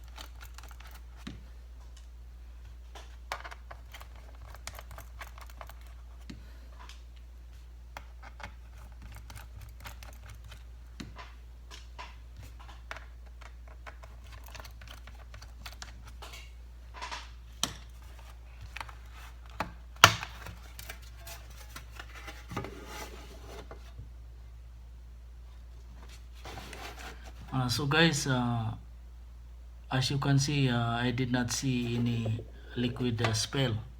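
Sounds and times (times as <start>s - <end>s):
steady low hum: 16.5s - 33.9s.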